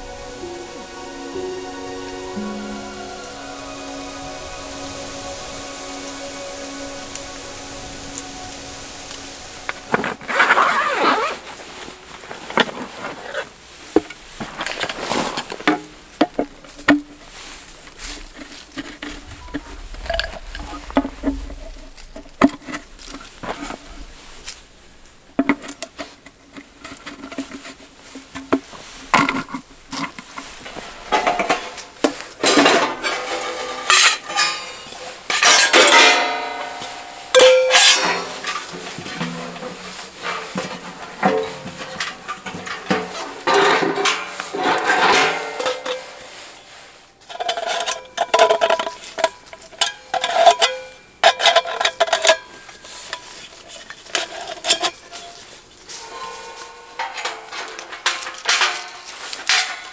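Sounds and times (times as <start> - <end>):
camp gear clattering and clinking: 3.3 - 20.6, 25.4 - 59.9.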